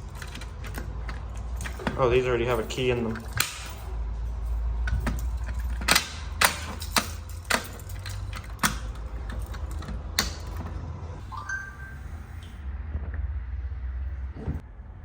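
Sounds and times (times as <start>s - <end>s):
low hum: 11.2s - 14.6s.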